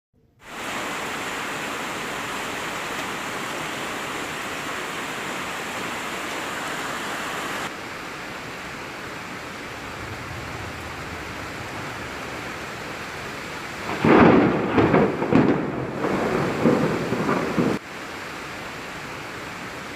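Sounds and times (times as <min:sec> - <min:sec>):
heavy rain hiss: 0:00.4 - 0:19.9
low rumble of thunder: 0:09.4 - 0:17.8.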